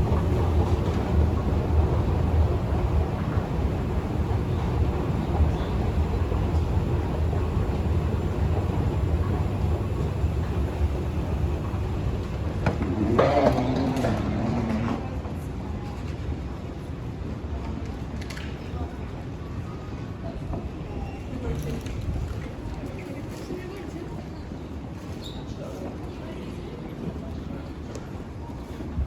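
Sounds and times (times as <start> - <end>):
train rumbling: 0.0 - 16.4.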